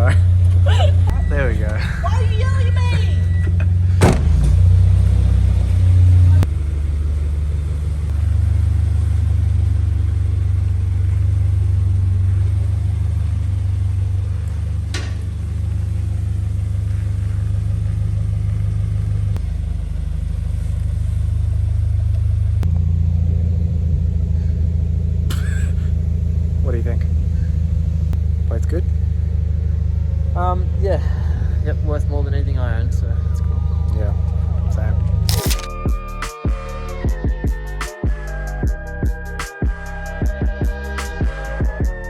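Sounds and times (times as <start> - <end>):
car engine drone: 0.0 - 42.0.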